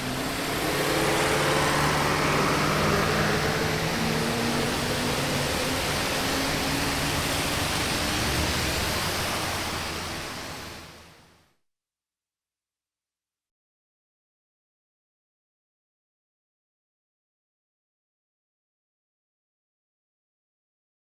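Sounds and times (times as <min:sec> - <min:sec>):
tyres hissing on wet road: 0:00.0 - 0:10.9
vehicle engine drone: 0:00.0 - 0:11.2.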